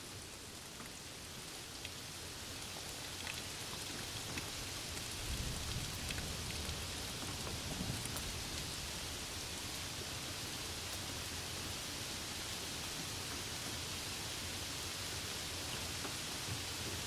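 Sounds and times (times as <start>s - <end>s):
steady rain: 0.0s - 17.0s.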